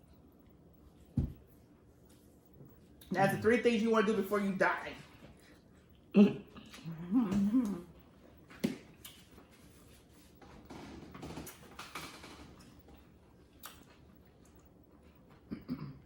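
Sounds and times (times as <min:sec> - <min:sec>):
chewing and crunching nachos: 0:05.4 - 0:15.6.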